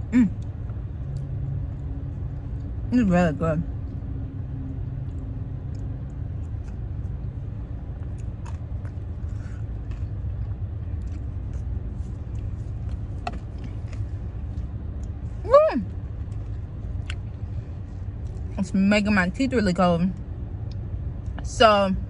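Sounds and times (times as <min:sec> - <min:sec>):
car cabin rumble: 0:05.1 - 0:20.2.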